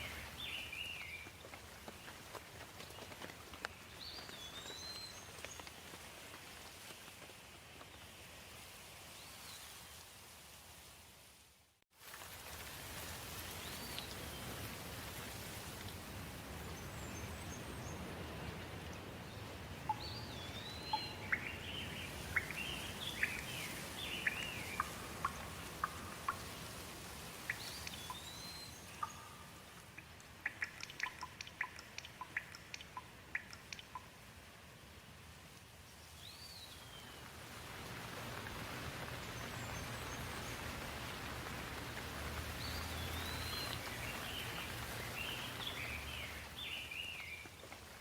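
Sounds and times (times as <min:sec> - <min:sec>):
songbirds singing: 0:00.0 - 0:02.2, 0:02.8 - 0:05.9, 0:16.6 - 0:26.8, 0:27.4 - 0:34.1, 0:35.9 - 0:37.4, 0:39.0 - 0:47.7
light rain hiss: 0:00.0 - 0:48.0.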